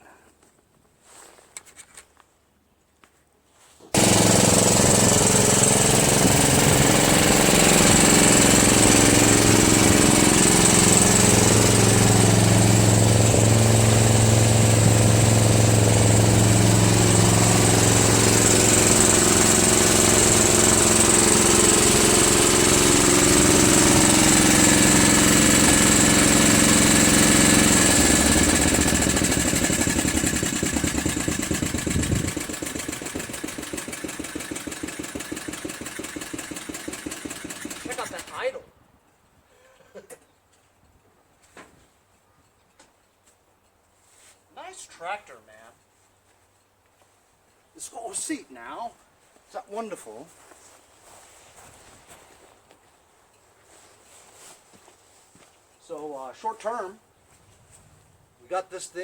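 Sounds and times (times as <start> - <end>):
lawn tractor engine running: 4.0 - 38.6.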